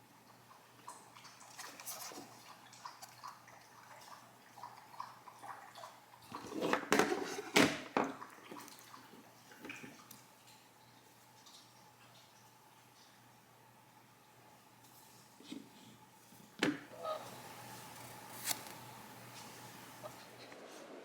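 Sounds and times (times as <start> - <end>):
rustling and scraping: 17.2 - 21.0.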